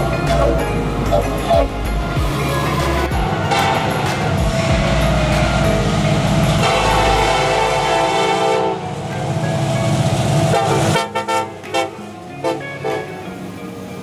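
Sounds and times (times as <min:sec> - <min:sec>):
diesel locomotives rumbling: 0:00.0 - 0:14.0
locomotive air horn blasts: 0:02.6 - 0:09.0, 0:10.5 - 0:13.3.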